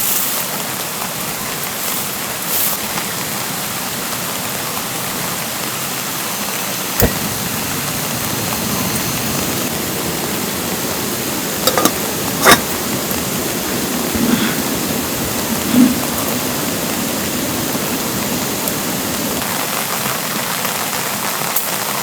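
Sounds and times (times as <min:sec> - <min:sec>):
steady rain: 0:00.0 - 0:22.0
stream rushing: 0:07.0 - 0:19.4.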